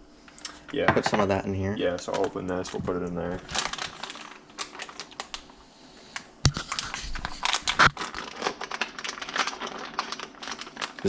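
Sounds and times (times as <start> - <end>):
bag crinkling and rustling: 1.9 - 5.6, 6.5 - 11.0.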